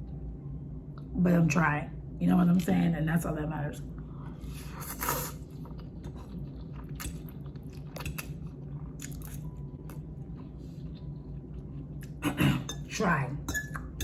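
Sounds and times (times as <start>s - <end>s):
person chewing food: 4.0s - 12.2s.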